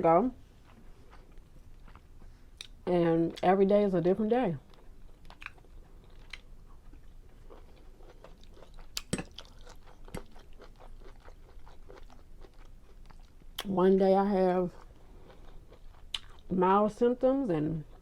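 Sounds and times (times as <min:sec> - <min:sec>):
close chewing mouth sounds: 0:00.6 - 0:03.4, 0:04.6 - 0:13.7, 0:14.7 - 0:16.5, 0:17.8 - 0:18.0.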